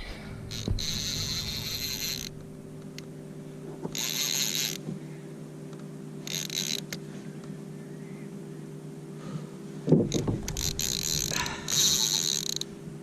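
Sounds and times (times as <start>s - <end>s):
fishing reel whirring: 0.4s - 3.1s, 3.9s - 4.8s, 6.2s - 7.0s, 10.1s - 12.8s.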